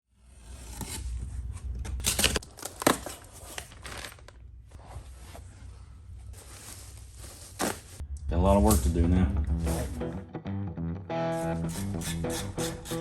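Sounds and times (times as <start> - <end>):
rustling handling noise: 1.4 - 8.0
low rumble: 8.0 - 11.0.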